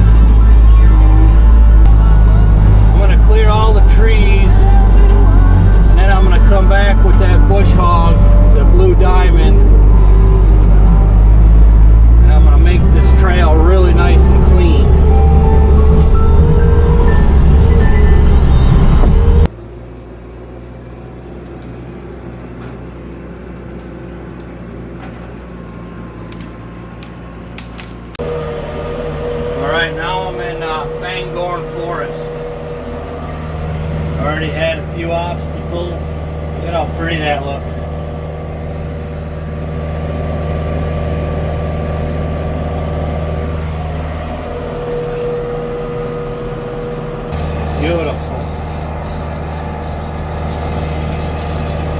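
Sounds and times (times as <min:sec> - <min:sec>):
diesel engine humming: 0:00.0 - 0:51.9
steady whine: 0:00.0 - 0:51.9
loud passage: 0:28.2 - 0:51.9.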